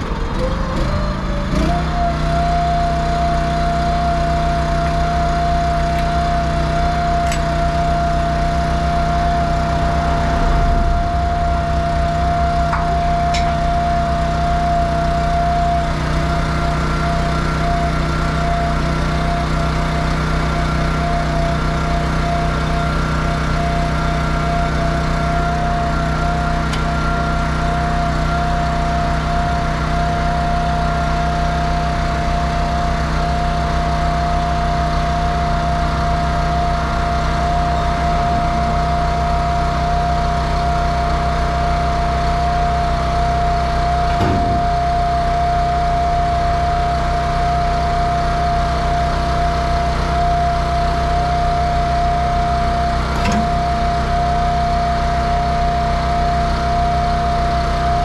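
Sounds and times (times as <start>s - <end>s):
diesel truck engine running: 0.0s - 58.0s
high whine: 2.8s - 19.8s, 42.9s - 51.4s
brief knocks: 44.1s - 44.8s.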